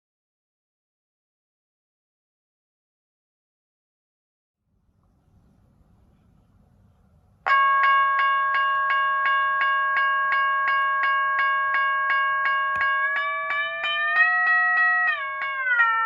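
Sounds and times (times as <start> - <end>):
electronic railroad crossing bell: 7.5 - 16.0.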